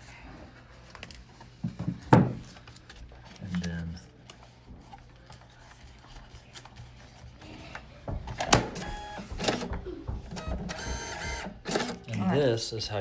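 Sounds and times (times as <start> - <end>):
label printer motor whirring: 8.3 - 12.1.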